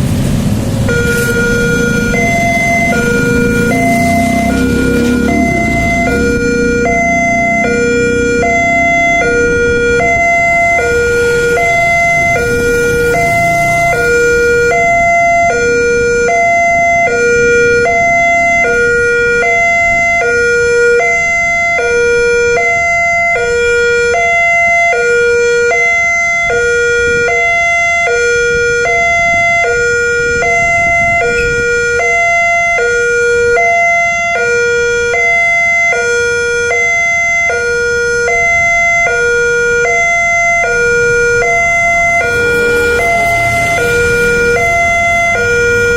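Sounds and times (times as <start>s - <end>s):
road traffic noise: 0.0s - 45.9s
two-tone warning siren wailing: 0.0s - 45.9s.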